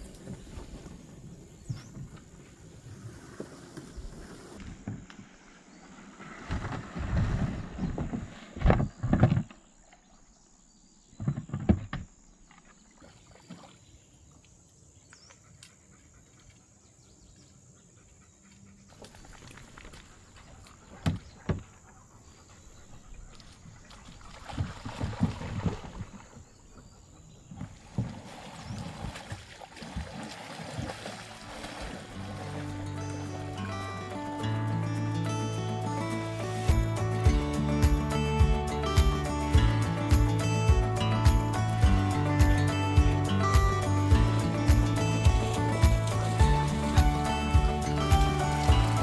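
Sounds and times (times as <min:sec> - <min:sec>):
paddle swishing water: 0:00.0 - 0:10.5, 0:12.4 - 0:14.6, 0:18.8 - 0:49.0.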